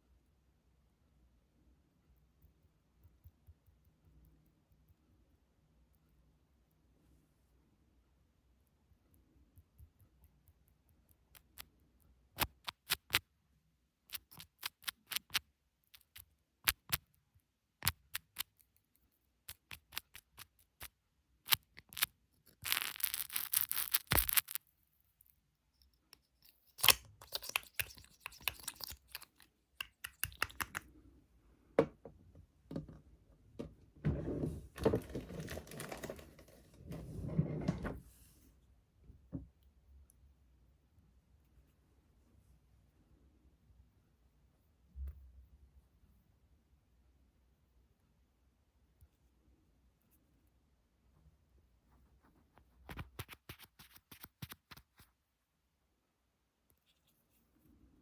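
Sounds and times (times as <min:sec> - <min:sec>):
scratching: 0:17.8 - 0:24.6, 0:25.2 - 0:30.9.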